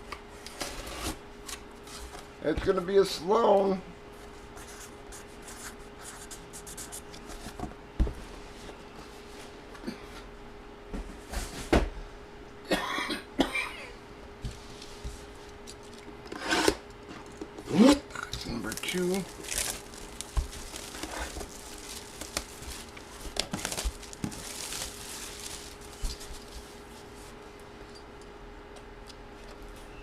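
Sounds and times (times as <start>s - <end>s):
faint steady hum: 0.0s - 30.0s
person coughing: 12.7s - 14.0s
trading cards being handled: 18.3s - 27.4s.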